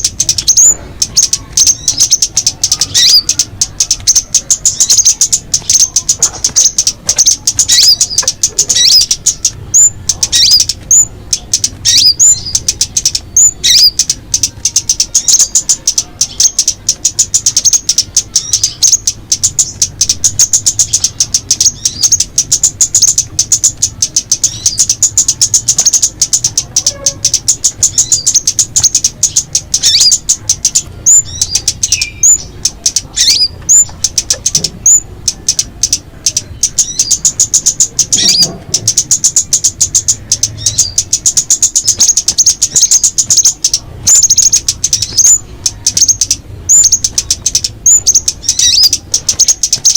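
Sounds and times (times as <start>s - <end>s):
small birds chirping: 0.0s - 49.9s.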